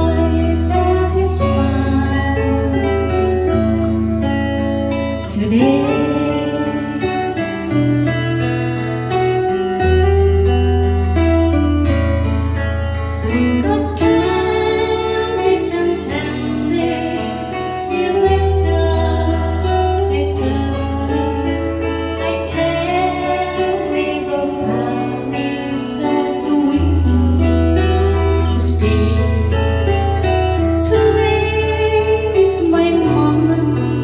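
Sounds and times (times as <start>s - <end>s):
guitar melody: 0.0s - 34.0s
long held bass notes: 0.0s - 34.0s.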